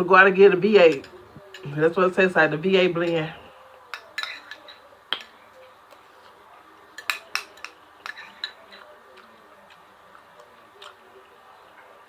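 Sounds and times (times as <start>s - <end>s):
cutlery clinking on plate: 0.8s - 1.8s, 3.0s - 9.3s.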